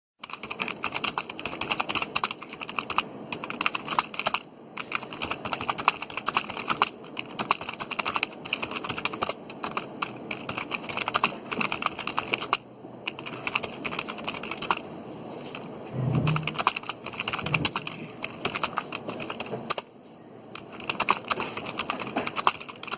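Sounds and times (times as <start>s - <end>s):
fast keyboard typing: 0.2s - 14.8s, 15.5s - 19.9s, 20.5s - 22.9s
brief low pitched sound: 15.9s - 16.7s.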